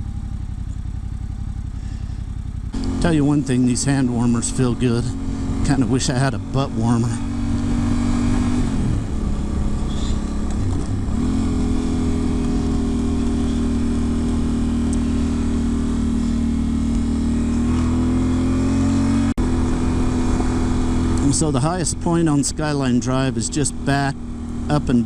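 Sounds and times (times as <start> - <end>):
motorcycle engine running: 0.0 - 25.0.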